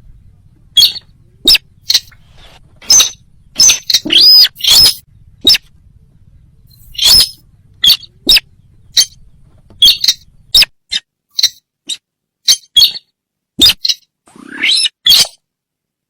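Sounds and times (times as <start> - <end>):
bird lure call: 2.8 - 5.7, 6.7 - 9.2.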